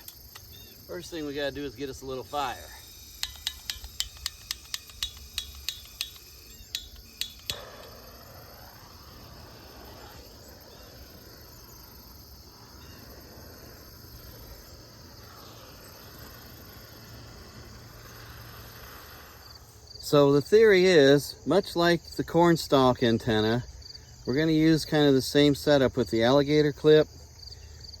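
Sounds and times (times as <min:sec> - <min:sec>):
sharp clicks: 0:00.0 - 0:00.7, 0:02.9 - 0:08.2
crickets chirping: 0:00.0 - 0:28.0.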